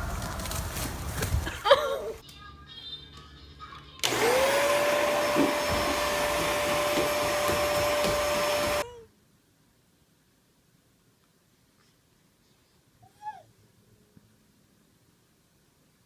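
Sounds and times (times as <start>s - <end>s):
electric motor whine: 4.0s - 8.8s.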